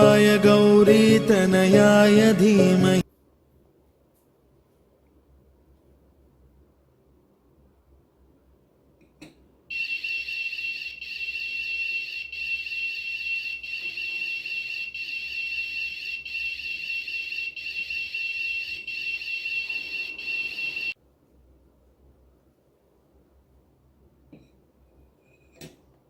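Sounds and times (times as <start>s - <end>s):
piezo buzzer alarm tone: 9.7s - 21.0s.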